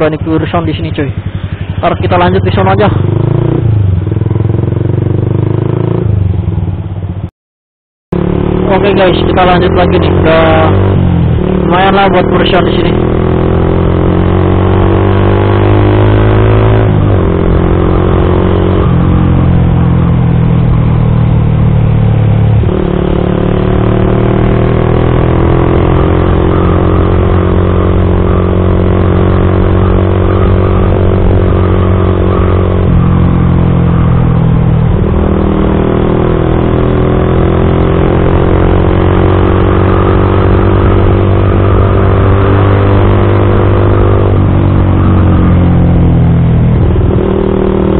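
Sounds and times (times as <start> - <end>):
motorcycle engine accelerating: 0.0 - 7.3, 8.1 - 47.9.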